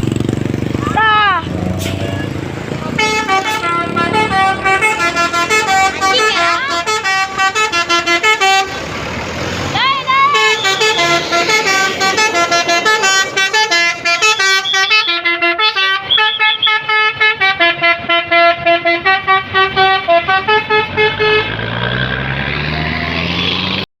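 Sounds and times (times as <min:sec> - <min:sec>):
bus engine revving: 0:00.0 - 0:23.9
bus horn playing melody: 0:01.8 - 0:08.9, 0:09.8 - 0:21.8.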